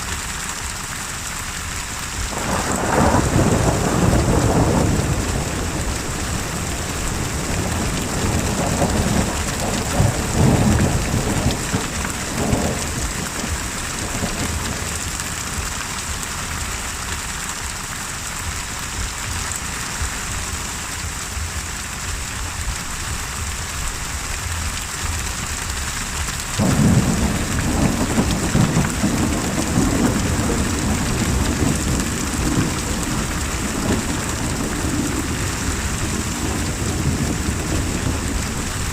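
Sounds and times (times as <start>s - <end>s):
heavy rain: 0.0s - 38.9s
rolling thunder: 2.2s - 15.8s, 26.6s - 38.9s.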